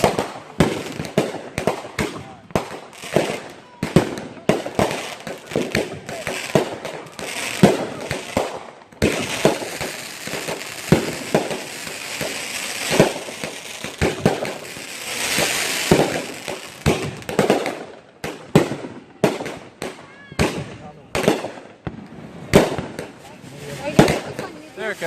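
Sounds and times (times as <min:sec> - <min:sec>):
fireworks cracks and pops: 0:00.0 - 0:25.0
fireworks hissing spray: 0:04.8 - 0:17.6, 0:22.0 - 0:25.0.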